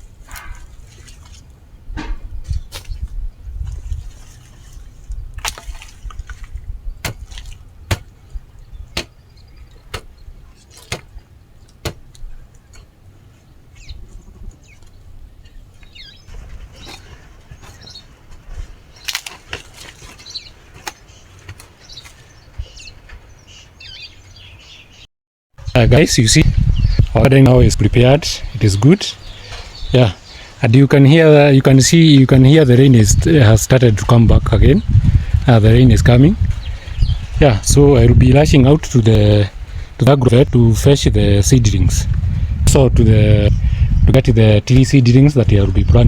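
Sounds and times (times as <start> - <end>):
sharp knocks: 2.0 - 2.9, 7.0 - 8.1.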